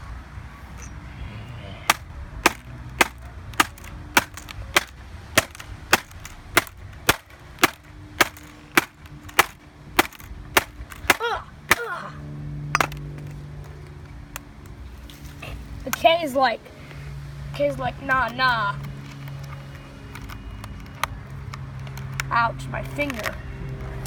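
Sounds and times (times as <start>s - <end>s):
hard blows on laptop keyboard: 1.9s - 11.9s.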